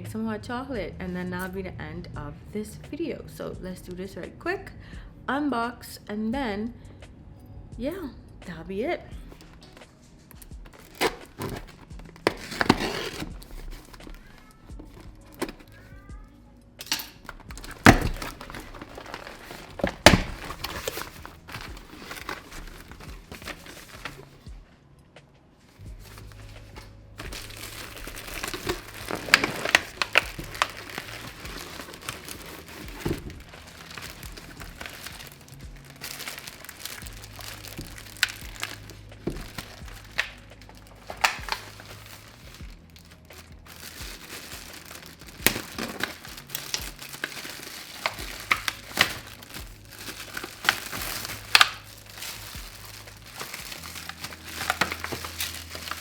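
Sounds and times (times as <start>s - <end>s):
packaging crinkling and rustling: 9.2s - 16.1s, 16.8s - 24.5s, 25.7s - 56.0s
packaging tearing: 9.3s - 15.8s, 16.8s - 24.5s, 26.0s - 56.0s.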